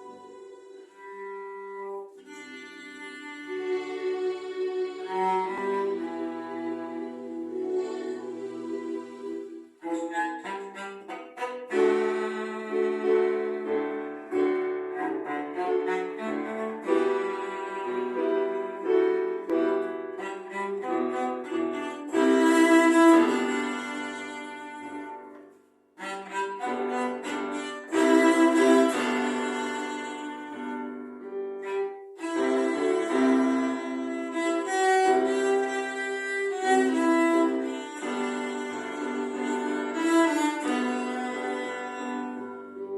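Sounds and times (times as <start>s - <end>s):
bowed string music with violin: 0.0s - 42.9s.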